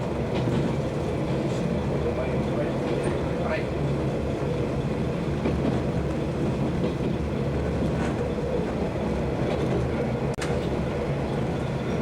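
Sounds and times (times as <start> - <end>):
diesel railcar engine drone: 0.0 - 12.0
wheel and rail noise: 0.0 - 12.0.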